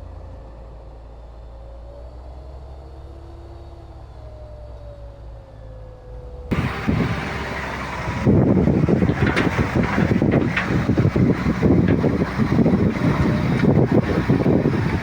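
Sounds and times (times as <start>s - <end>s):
bulldozer engine rumbling: 6.5s - 15.0s.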